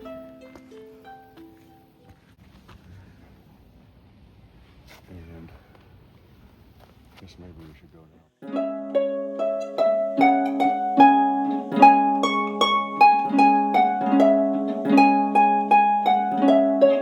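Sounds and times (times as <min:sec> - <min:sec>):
plucked string melody over drone: 0:08.4 - 0:17.0.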